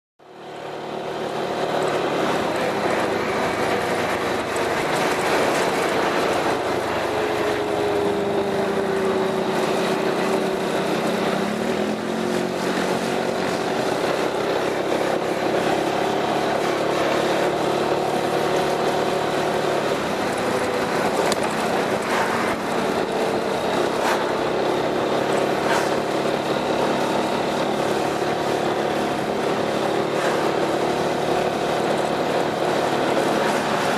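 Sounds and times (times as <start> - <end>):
scooter engine running: 0.3 - 33.9.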